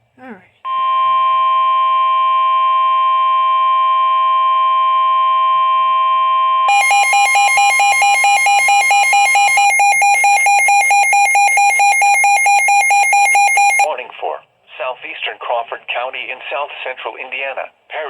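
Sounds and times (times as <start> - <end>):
rapid low alarm beeps: 6.7 - 13.9
steady alarm tone: 6.7 - 13.9.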